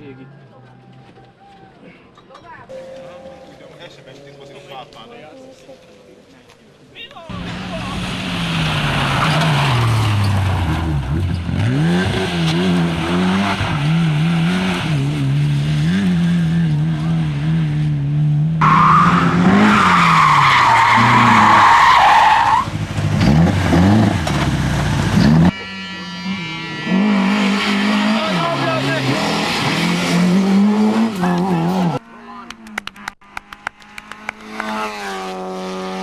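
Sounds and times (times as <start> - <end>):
race car engines revving: 3.3 - 36.0
tyres squealing: 18.6 - 22.7.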